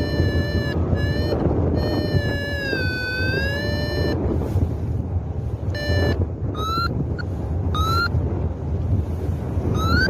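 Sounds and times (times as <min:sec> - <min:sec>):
variometer electronic beeps: 0:00.0 - 0:04.3, 0:05.6 - 0:08.2, 0:09.7 - 0:10.0
wind rushing over microphone: 0:00.0 - 0:10.0.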